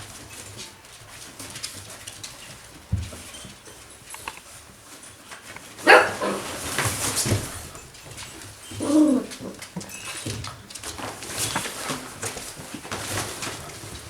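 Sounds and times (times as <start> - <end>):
puppy yipping: 5.8 - 6.5
puppy barking: 5.8 - 6.6.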